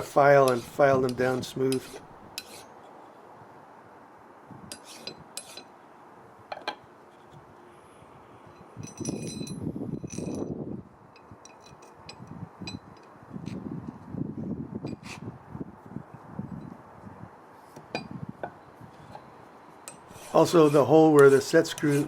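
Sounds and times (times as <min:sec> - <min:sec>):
hand file rasping on steel: 0:00.4 - 0:02.7, 0:20.1 - 0:22.0.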